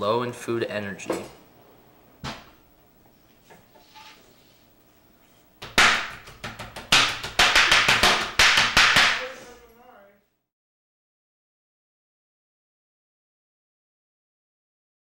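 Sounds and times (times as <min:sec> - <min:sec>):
loud sharp smacks: 0:05.6 - 0:09.3.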